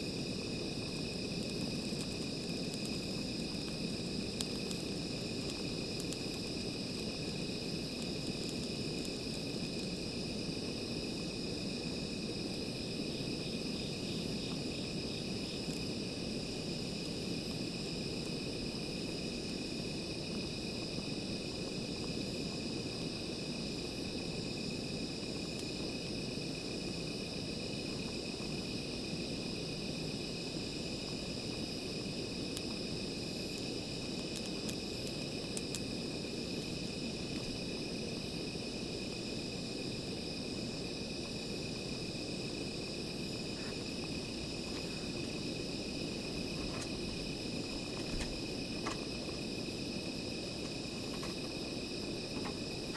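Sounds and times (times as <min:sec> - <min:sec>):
crickets trilling: 0:00.0 - 0:52.9
faint ticks: 0:00.9 - 0:10.1.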